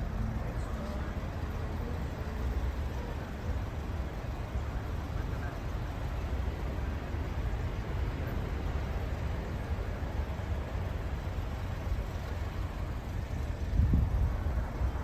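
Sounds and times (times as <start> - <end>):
car interior engine and tyre noise: 0.0 - 15.0.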